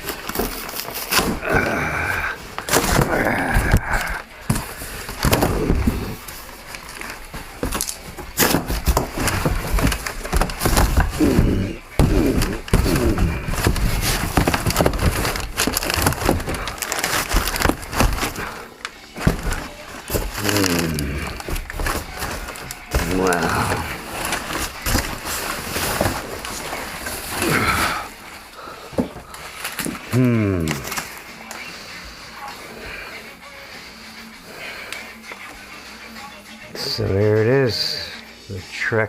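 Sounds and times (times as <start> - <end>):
cardboard box being torn open: 0.0 - 18.6, 19.2 - 28.1.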